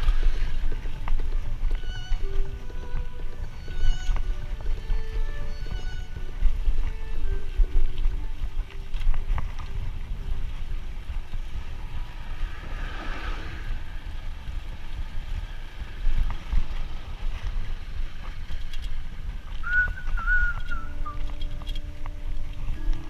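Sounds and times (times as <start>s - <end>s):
wind buffeting microphone: 0.0s - 23.0s
high whistle-like tone: 19.6s - 21.5s.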